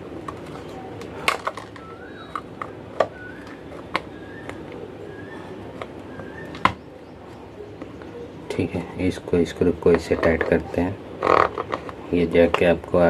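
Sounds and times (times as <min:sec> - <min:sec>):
plastic parts clicking and knocking: 0:00.2 - 0:04.6.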